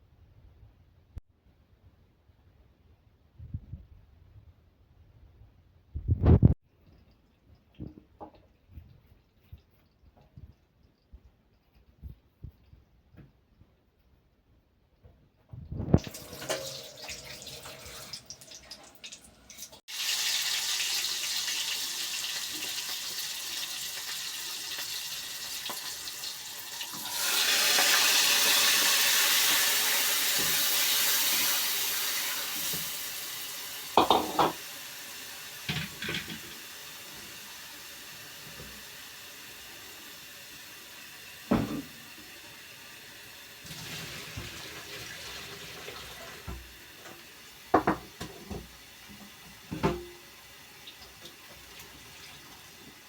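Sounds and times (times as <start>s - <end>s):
water running from a tap: 16.0s - 53.0s.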